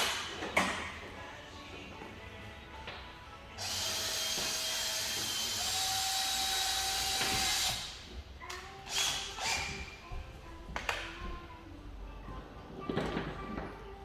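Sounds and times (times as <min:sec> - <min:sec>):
power tool running: 0:03.6 - 0:08.0.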